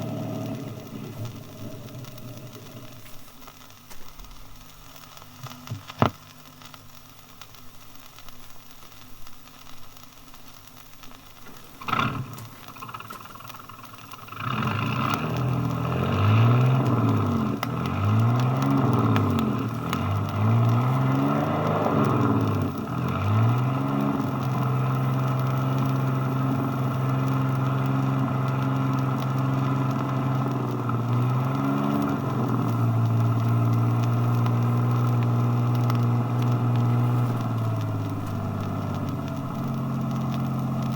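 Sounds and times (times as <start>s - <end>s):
boat engine revving: 0.0s - 3.3s, 11.8s - 40.9s.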